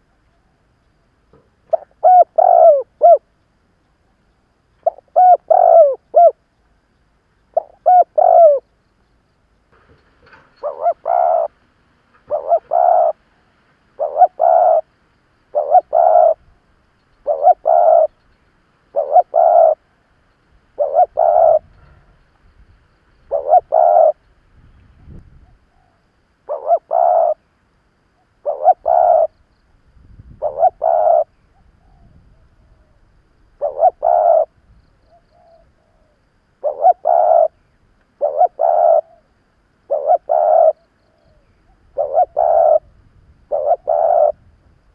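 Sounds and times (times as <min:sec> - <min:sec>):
dove cooing: 0:01.6 - 0:03.3, 0:04.8 - 0:06.4, 0:07.5 - 0:08.7, 0:10.3 - 0:11.6, 0:12.2 - 0:14.9, 0:15.5 - 0:16.4, 0:17.2 - 0:18.2, 0:18.9 - 0:19.9, 0:20.8 - 0:22.1, 0:23.3 - 0:24.2, 0:25.4 - 0:27.4, 0:28.2 - 0:29.4, 0:30.3 - 0:37.6, 0:38.2 - 0:42.9, 0:43.5 - 0:44.5.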